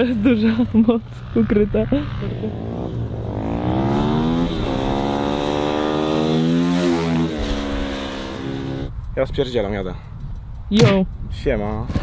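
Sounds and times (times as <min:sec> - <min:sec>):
motorcycle engine revving: 0:00.0 - 0:08.9.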